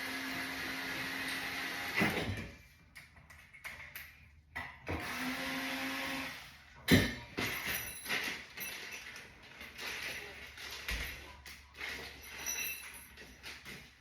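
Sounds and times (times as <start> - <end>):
small power tool motor: 0.0 - 2.0, 5.0 - 6.5.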